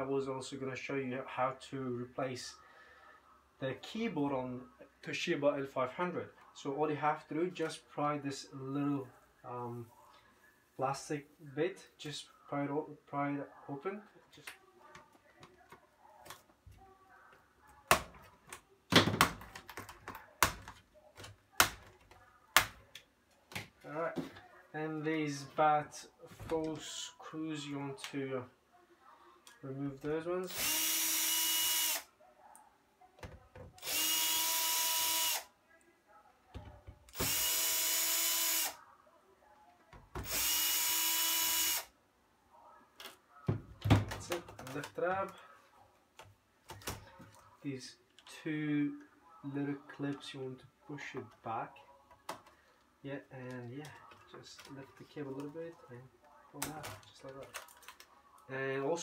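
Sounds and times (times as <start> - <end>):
power screwdriver whining: 30.5 - 32.1, 33.8 - 35.5, 37.1 - 38.8, 40.2 - 41.9.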